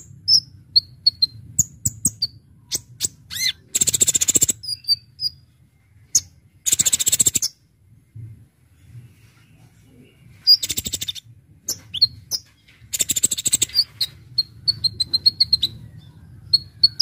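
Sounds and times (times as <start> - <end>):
bird rapid trills: 6.6 - 7.5, 10.4 - 15.8
bird chips and whistles: 10.4 - 15.9.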